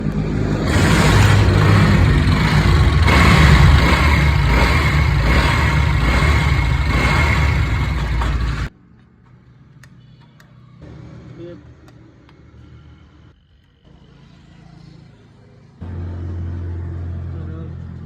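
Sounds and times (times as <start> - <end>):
vehicle engine running: 0.0 - 8.7.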